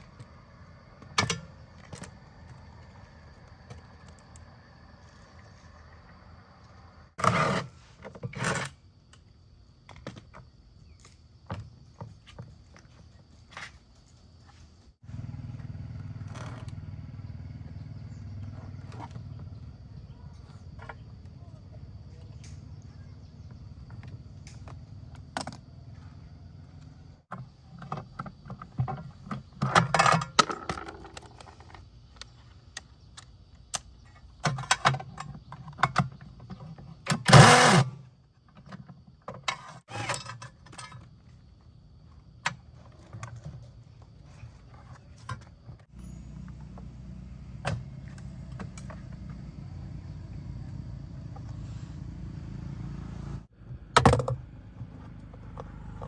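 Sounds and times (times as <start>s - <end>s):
clinks and knocks of tools: 27.8s - 32.3s.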